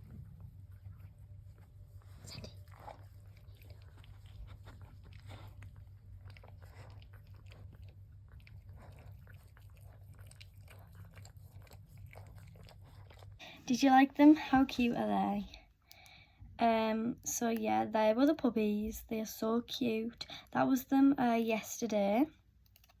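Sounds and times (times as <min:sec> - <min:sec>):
puppies clicking and smacking: 0:00.0 - 0:14.6, 0:22.6 - 0:23.0
steady low hum: 0:00.0 - 0:23.0.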